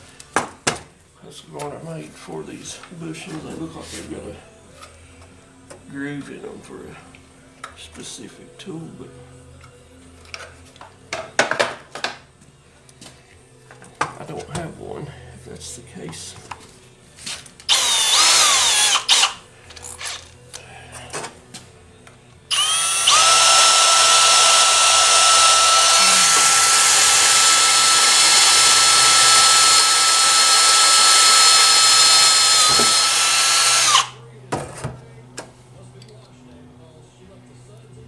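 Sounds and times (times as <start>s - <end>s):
electric drill whining: 17.7s - 20.4s, 22.5s - 34.2s.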